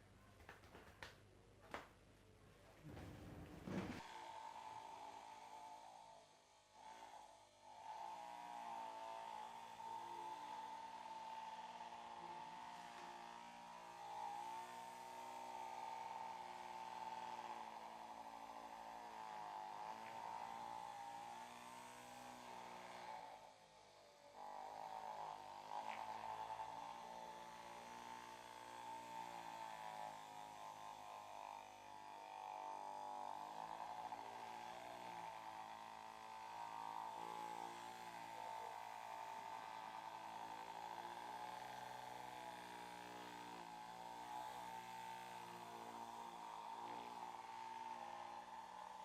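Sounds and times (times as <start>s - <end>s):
massage machine buzzing: 2.8s - 49.0s.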